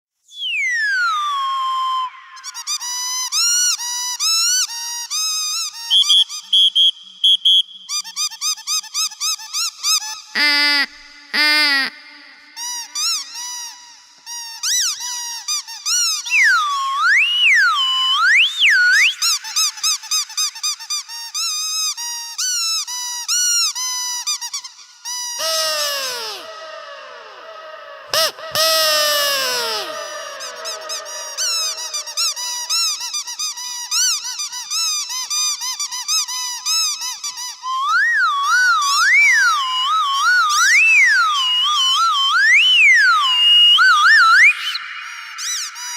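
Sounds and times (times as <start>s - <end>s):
squeaky dog toy: 7.9s - 12.0s, 28.1s - 37.6s, 43.9s - 45.9s.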